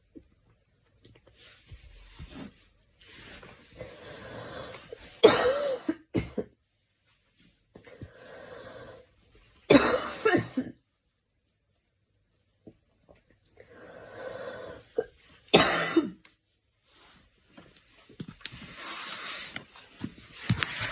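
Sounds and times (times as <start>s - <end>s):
girl coughing: 5.2s - 6.5s, 9.7s - 10.8s, 15.5s - 16.2s
noisy breath in: 7.8s - 9.2s, 13.6s - 15.0s.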